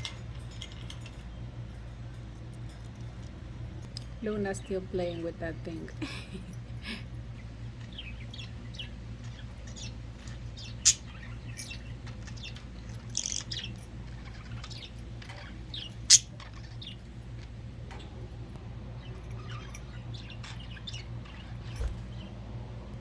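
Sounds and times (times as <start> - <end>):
budgerigars chirping: 7.8 - 17.1.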